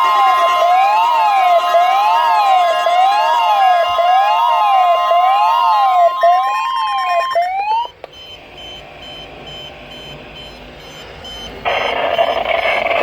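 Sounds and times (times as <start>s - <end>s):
siren-like electronic tone sweeping: 0.0s - 7.9s, 11.2s - 13.0s
steady high tone: 0.0s - 12.8s
radio hiss: 11.6s - 13.0s.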